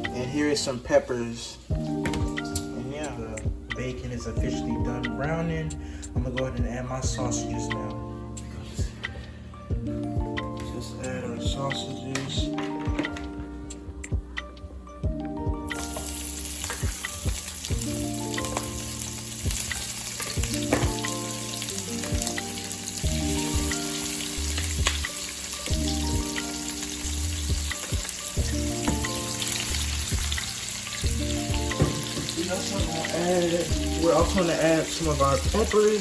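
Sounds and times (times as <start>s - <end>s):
background music: 0.0s - 36.0s
sausage sizzling in a pan: 15.7s - 36.0s.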